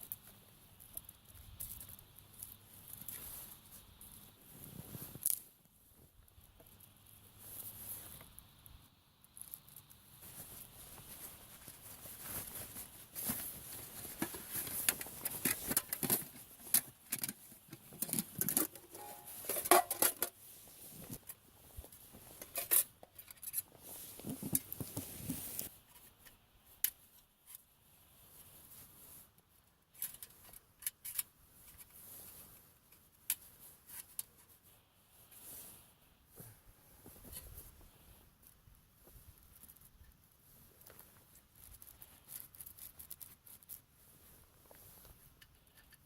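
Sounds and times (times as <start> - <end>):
small objects clicking and clinking: 0.0 - 3.2, 9.2 - 10.0, 40.8 - 43.8.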